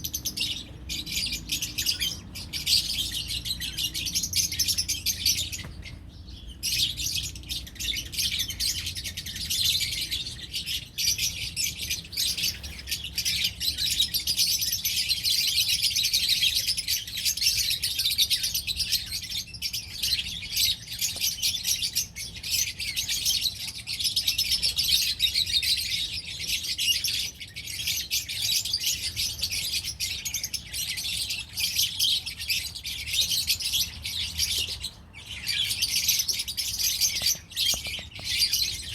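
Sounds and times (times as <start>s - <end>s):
flock of birds chirping: 0.0s - 38.9s.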